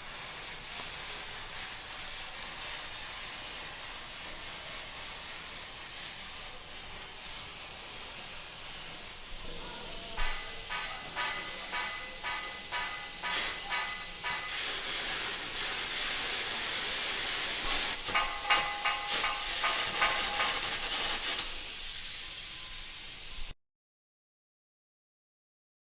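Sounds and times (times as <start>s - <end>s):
steady hiss: 0.0s - 23.6s
ringing metallic tones: 9.5s - 14.9s, 17.7s - 21.0s.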